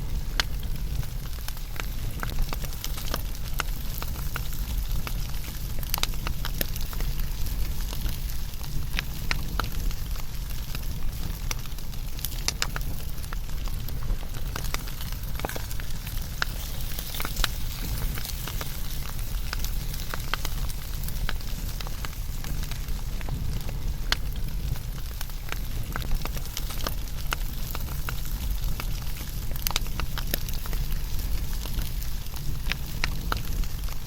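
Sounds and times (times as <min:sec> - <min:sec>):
burning logs crackling and popping: 0:00.0 - 0:34.0
wood fire rumbling: 0:00.0 - 0:34.0.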